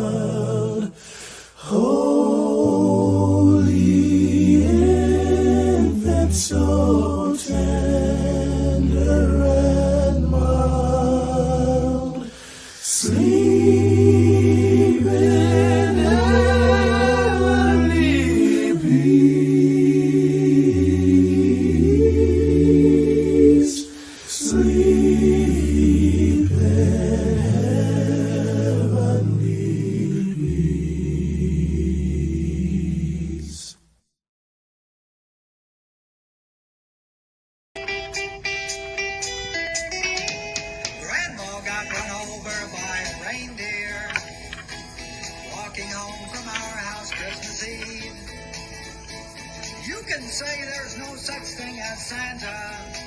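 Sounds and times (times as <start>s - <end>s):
group singing in harmony: 0.0s - 33.7s.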